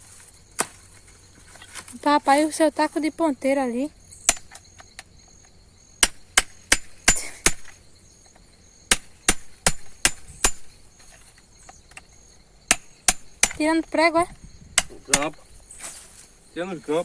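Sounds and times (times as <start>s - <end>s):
hammer striking wood and metal: 4.3s - 5.0s, 6.0s - 7.8s, 8.9s - 10.8s, 12.7s - 13.9s, 14.8s - 15.4s.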